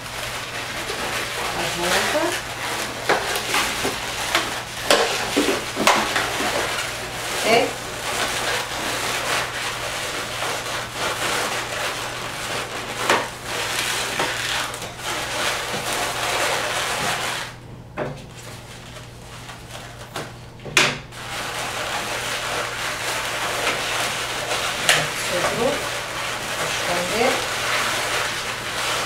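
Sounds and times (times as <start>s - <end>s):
balloons rubbing and squeaking: 0.0s - 4.9s.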